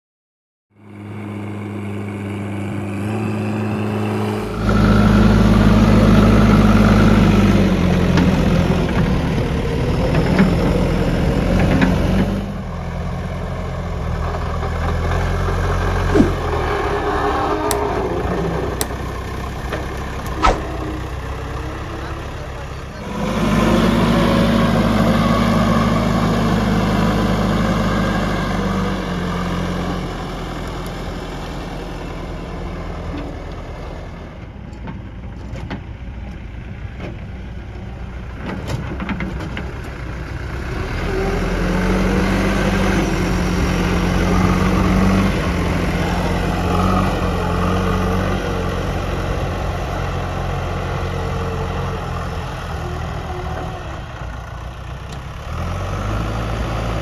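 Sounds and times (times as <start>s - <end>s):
diesel engine running: 0.7s - 57.0s.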